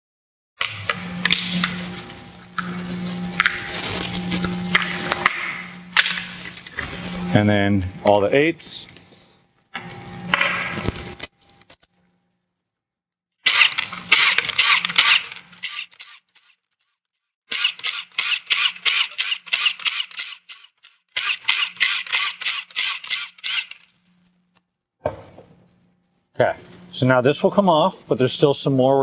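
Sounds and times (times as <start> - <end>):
ratchet clicking rapidly: 13.5 - 16.5, 17.5 - 23.8.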